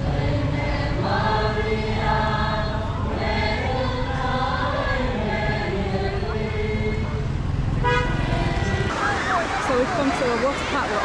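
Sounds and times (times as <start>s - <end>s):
choir singing held notes: 0.0s - 7.2s.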